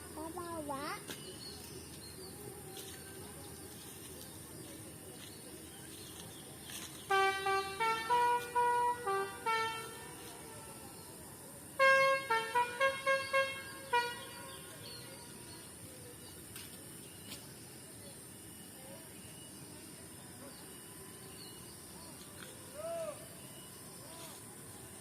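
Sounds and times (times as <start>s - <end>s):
multi-note horn playing tunes: 7.0s - 11.0s, 11.8s - 14.8s.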